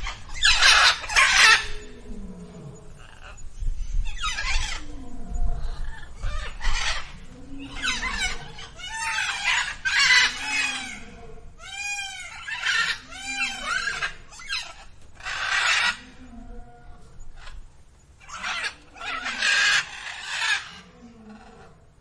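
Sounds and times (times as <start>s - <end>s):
peafowl calling: 0.0s - 1.8s, 5.9s - 16.1s.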